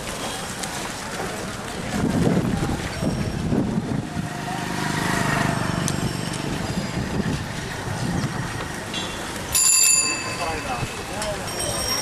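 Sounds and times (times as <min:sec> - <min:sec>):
faint voices: 0:00.0 - 0:05.5, 0:10.0 - 0:12.0
traffic noise: 0:00.0 - 0:12.0.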